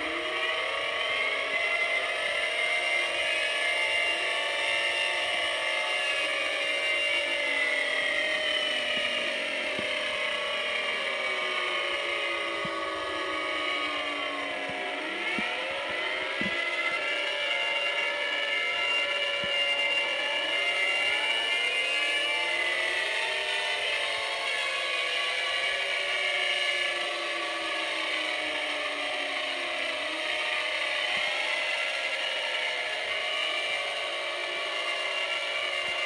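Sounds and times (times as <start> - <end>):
tornado warning sirens wailing: 0.0 - 36.0.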